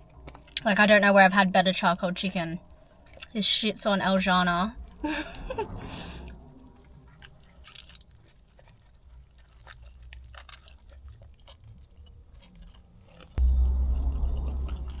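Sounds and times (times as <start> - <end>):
person chewing: 0.0 - 0.6, 2.6 - 3.4, 6.0 - 15.0.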